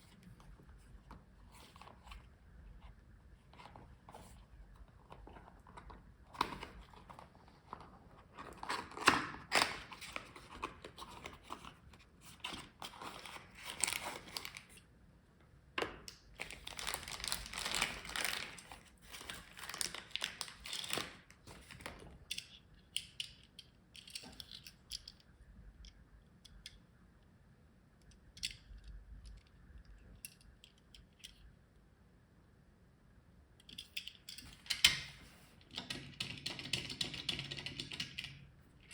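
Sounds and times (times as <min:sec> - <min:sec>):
cardboard and plastic crinkling: 0:12.3 - 0:14.8, 0:16.4 - 0:22.2.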